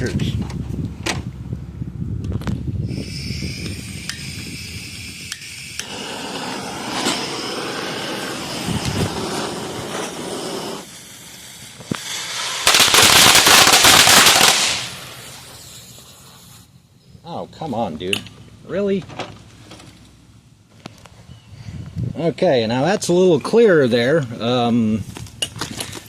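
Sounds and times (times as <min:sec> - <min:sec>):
firecrackers crackling: 0:03.2 - 0:16.7.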